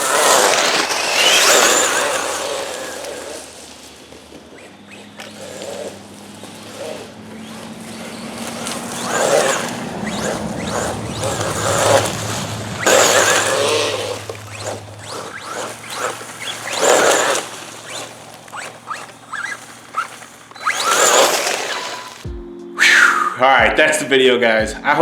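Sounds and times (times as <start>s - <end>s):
electric rc truck throttle surging: 0.0s - 23.4s.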